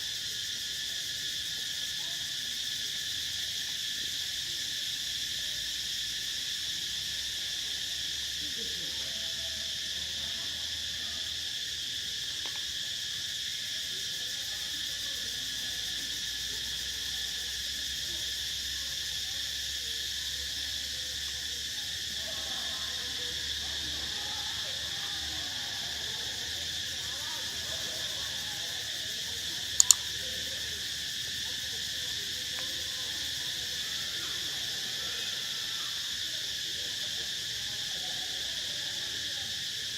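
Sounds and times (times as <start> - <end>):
insect chorus droning: 0.0 - 39.9
sharp clicks: 29.8 - 30.0.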